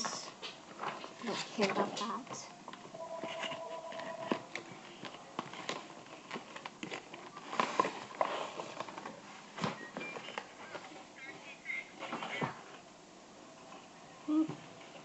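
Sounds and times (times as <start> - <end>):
packaging crinkling: 2.7 - 9.3.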